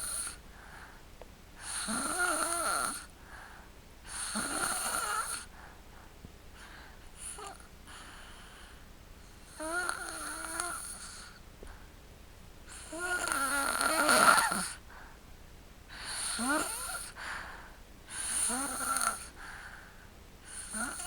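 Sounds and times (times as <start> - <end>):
whistling snores: 4.1 - 5.5, 18.2 - 19.3.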